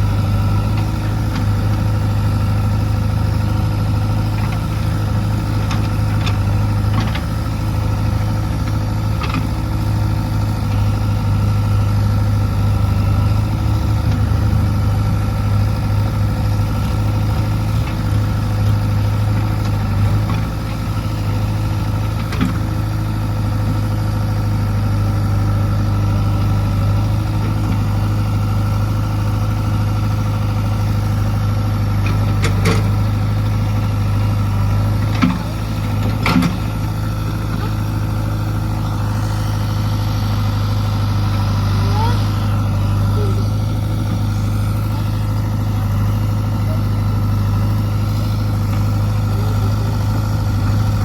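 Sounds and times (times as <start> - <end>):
diesel engine idling: 0.0 - 51.0.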